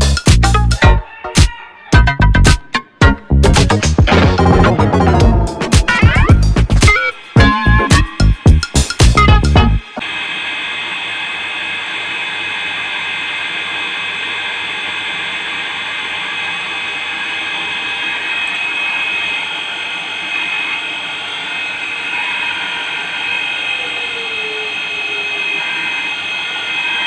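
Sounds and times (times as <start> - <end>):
music: 0.0 - 10.0
electric water pump humming: 5.2 - 27.0.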